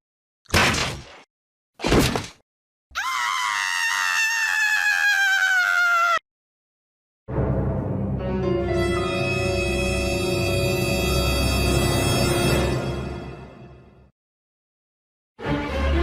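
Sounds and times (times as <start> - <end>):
long high scream: 3.0 - 6.2.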